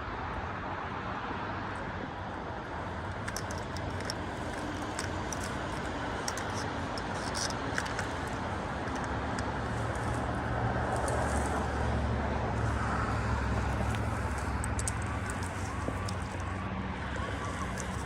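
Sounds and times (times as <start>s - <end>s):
low engine hum: 2.1s - 18.0s
faint clicks: 3.1s - 10.2s.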